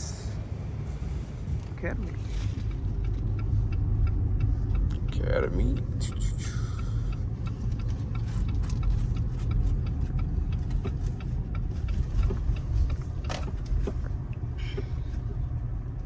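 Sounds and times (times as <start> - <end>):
car engine rumble: 0.0 - 16.0
road noise: 0.0 - 16.0
faint regular ticking: 2.7 - 14.4.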